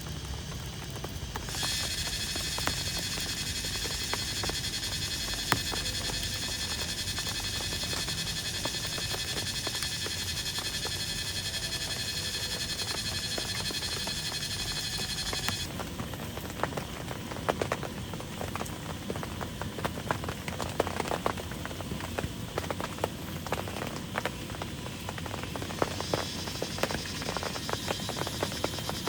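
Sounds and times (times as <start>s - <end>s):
rain hiss: 0.0s - 29.0s
raindrops pattering on surface: 0.0s - 29.0s.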